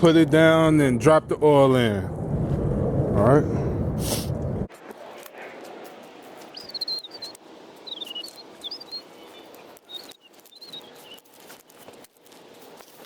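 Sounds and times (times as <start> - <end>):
small bird chirping: 6.4 - 12.1.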